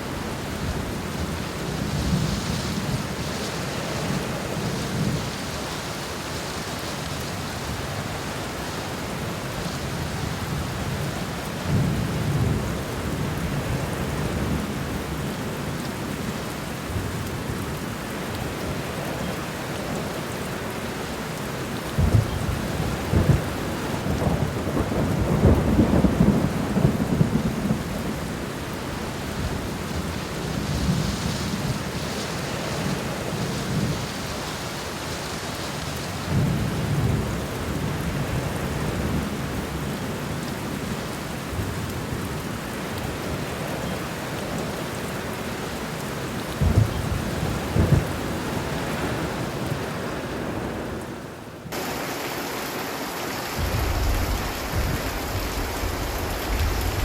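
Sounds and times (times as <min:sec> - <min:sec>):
heavy rain falling: 0:00.0 - 0:57.0
sharp thunder cracks: 0:53.6 - 0:57.0
thunder rolling: 0:53.6 - 0:57.0.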